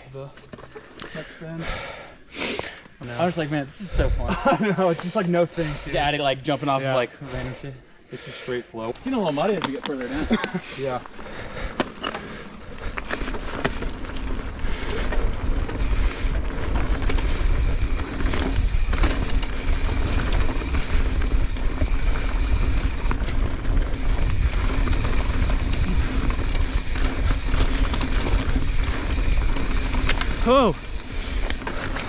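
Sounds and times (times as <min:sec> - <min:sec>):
bike clicks and rattles: 0:00.2 - 0:01.3, 0:08.8 - 0:32.0
tyres rolling over dirt: 0:09.1 - 0:32.0
wind rumbling on microphone: 0:13.2 - 0:32.0.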